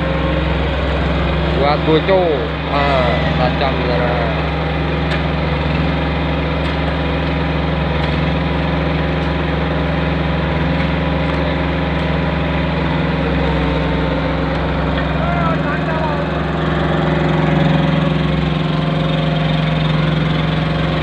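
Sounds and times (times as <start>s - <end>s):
machine engine running: 0.0s - 21.0s.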